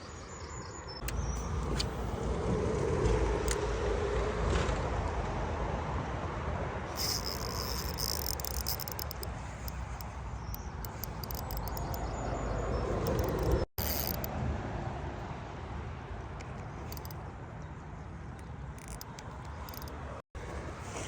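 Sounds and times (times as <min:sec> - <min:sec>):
fishing reel clicking and whirring: 0:06.9 - 0:12.1, 0:12.8 - 0:14.3, 0:16.4 - 0:17.2, 0:18.8 - 0:20.0.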